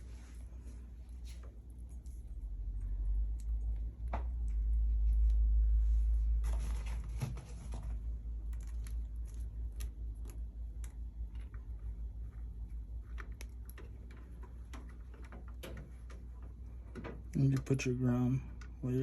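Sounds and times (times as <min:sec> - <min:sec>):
hands handling cord wires: 0:06.4 - 0:17.8.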